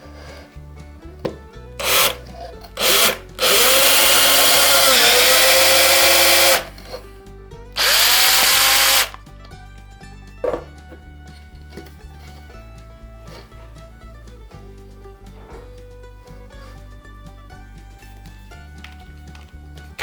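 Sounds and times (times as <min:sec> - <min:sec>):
background music: 0:00.0 - 0:20.0
cordless power tool motor: 0:01.8 - 0:07.1, 0:07.8 - 0:09.2.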